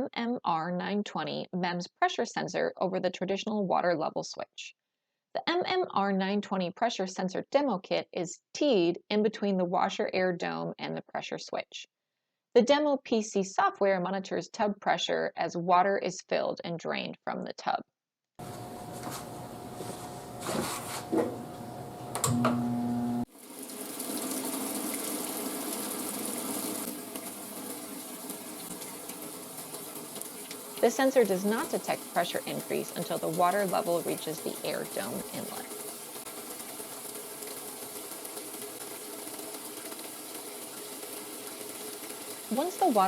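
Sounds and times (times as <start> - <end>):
washing machine hum: 18.4 - 43.0
water running into tub: 22.6 - 43.0.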